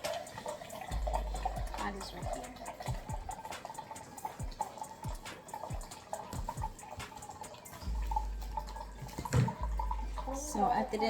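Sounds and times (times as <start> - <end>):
drips and splashes: 0.0 - 11.0
water trickling into cup: 0.0 - 11.0.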